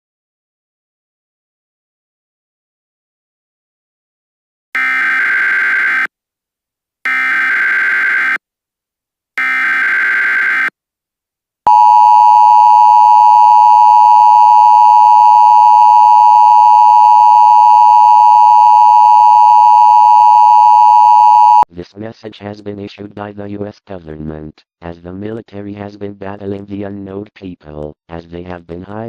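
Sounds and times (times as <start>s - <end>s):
loud steady attention tone: 11.7s - 21.6s.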